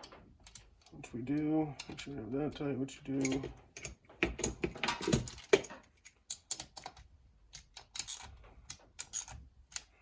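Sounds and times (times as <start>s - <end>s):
small metal parts clicking: 3.2s - 10.0s.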